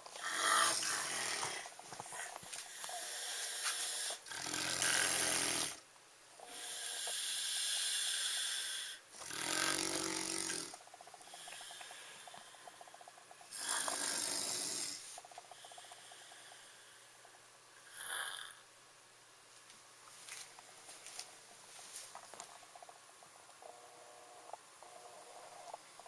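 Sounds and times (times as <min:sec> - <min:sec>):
heavy snoring: 0:00.2 - 0:05.8, 0:06.5 - 0:12.5, 0:13.5 - 0:15.1, 0:17.8 - 0:18.6.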